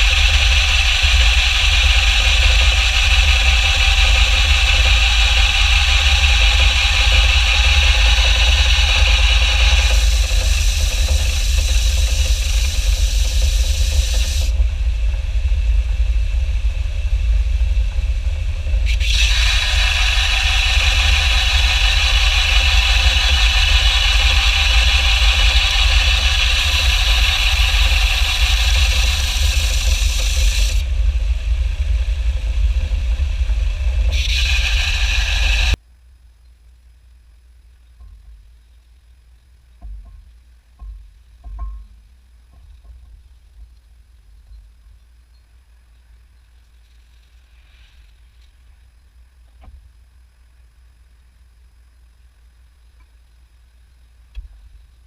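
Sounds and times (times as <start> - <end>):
low rumble: 0.0 - 36.4
abrasive scraping on metal: 17.3 - 35.8.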